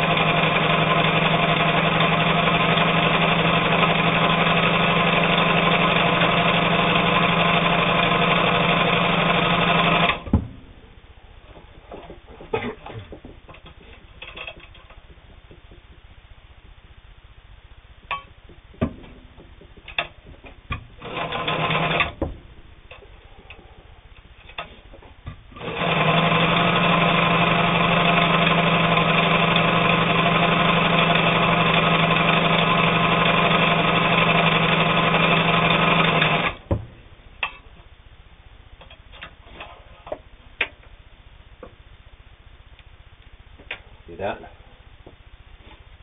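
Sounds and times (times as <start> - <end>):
sewing machine stitching: 0.0 - 10.3, 21.0 - 22.2, 25.5 - 36.7
sharp clicks and knocks: 11.5 - 16.8, 18.0 - 21.0, 36.6 - 37.9, 42.8 - 43.9.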